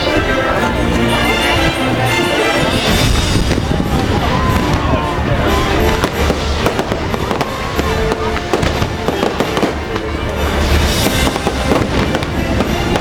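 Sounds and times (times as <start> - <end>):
music on loudspeakers: 0.0 - 13.0
fireworks bursting and crackling: 2.6 - 13.0.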